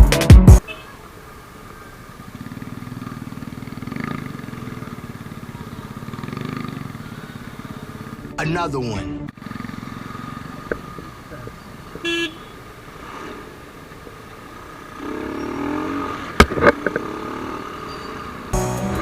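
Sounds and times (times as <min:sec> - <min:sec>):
vehicle horn toot: 0:00.6 - 0:01.0, 0:11.9 - 0:12.6
motorcycle engine and road rumble: 0:00.6 - 0:19.0
passing vehicle engine: 0:01.0 - 0:19.0
sharp knocks: 0:16.4 - 0:17.0.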